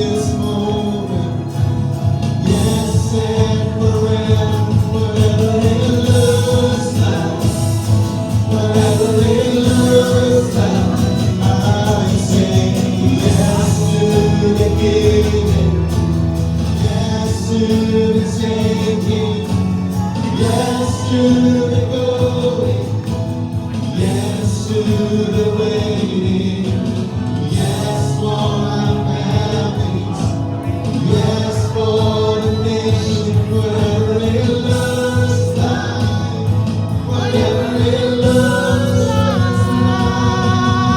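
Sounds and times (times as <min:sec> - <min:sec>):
worship band playing: 0:00.0 - 0:40.9.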